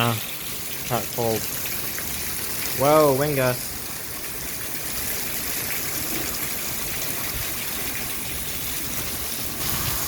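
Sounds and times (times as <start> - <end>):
heavy rain pouring: 0.0 - 10.0
gusting wind: 9.4 - 10.0.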